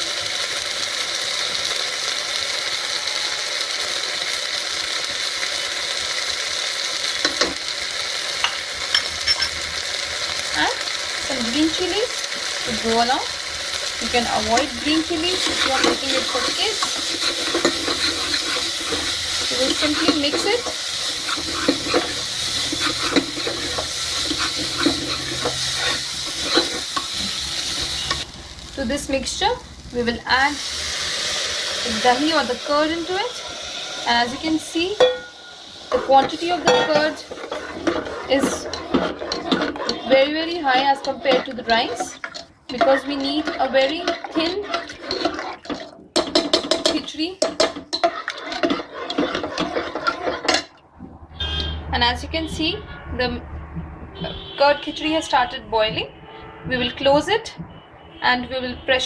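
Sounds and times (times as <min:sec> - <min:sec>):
food sizzling in hot oil: 0:00.0 - 0:50.8
spoon scraping pan: 0:08.2 - 0:09.9, 0:10.6 - 0:28.3, 0:31.1 - 0:50.9.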